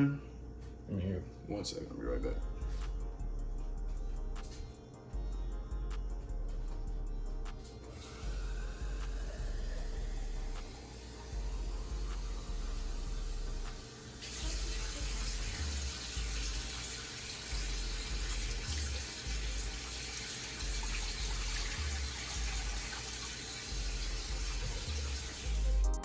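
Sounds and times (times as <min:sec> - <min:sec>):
tap water running into pot: 0:13.7 - 0:25.7.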